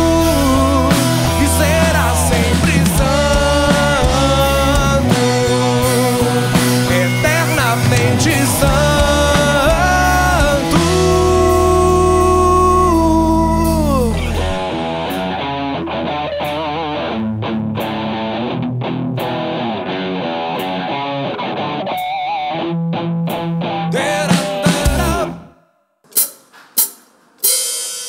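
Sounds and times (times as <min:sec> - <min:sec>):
drums and bass: 0:00.0 - 0:17.0, 0:23.3 - 0:25.5
electric guitar lead: 0:00.0 - 0:25.5.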